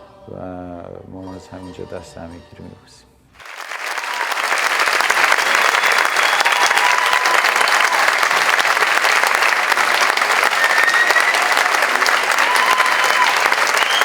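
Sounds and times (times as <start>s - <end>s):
audience applauding: 3.4s - 14.0s.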